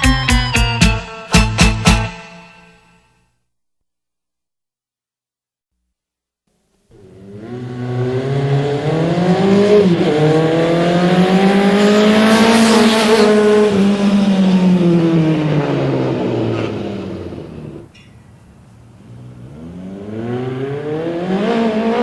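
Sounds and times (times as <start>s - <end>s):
electronic car engine effect: 6.9s - 17.9s.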